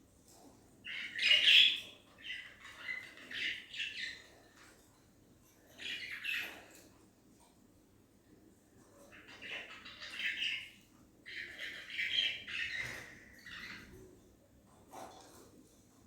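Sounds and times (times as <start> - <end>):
budgerigars chirping and chattering: 0.9 - 4.4, 5.7 - 6.7, 9.1 - 14.0.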